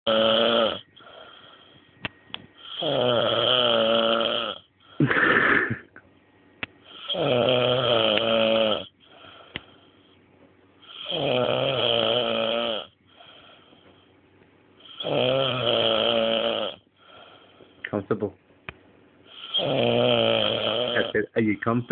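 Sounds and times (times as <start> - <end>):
man snoring loudly: 0.1 - 1.6, 2.6 - 5.9, 6.9 - 9.4, 10.8 - 13.6, 14.8 - 17.4, 19.3 - 21.3
quiet breathing: 0.8 - 2.9, 8.8 - 11.2, 12.9 - 15.1, 16.8 - 18.0
sharp snort: 5.0 - 5.8.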